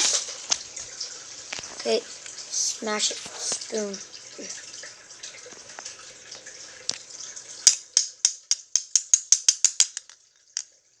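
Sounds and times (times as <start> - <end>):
spoon tapping a plug: 7.7 - 10.1.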